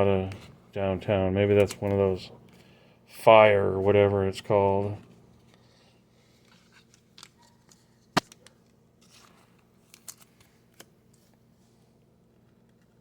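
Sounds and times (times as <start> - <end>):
cards ticking and rustling: 1.5 - 2.7, 6.3 - 11.3.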